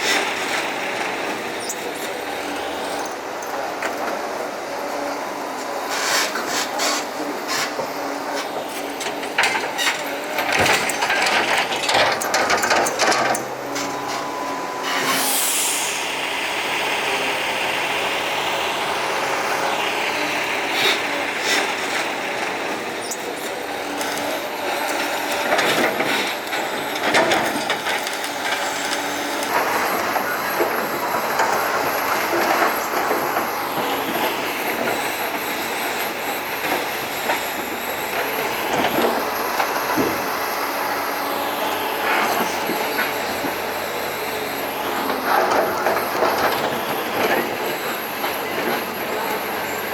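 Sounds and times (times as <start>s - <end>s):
loader engine running: 0.0s - 49.9s
high falling metal squeal: 13.8s - 16.1s.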